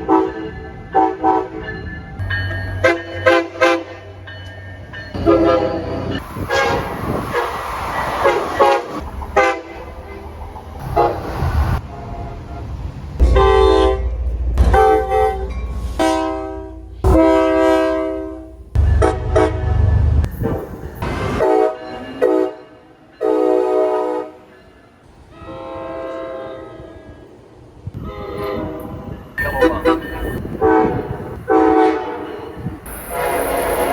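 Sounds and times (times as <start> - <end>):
train air horns blasting: 1.0 - 1.6, 2.8 - 4.2, 5.2 - 7.6, 8.2 - 19.9, 20.5 - 24.5, 25.3 - 27.2, 28.0 - 33.9
heavy low rumble: 9.0 - 21.4.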